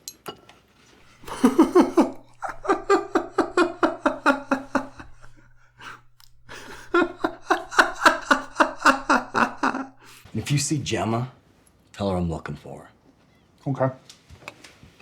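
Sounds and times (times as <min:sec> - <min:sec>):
people laughing: 0:01.0 - 0:10.3.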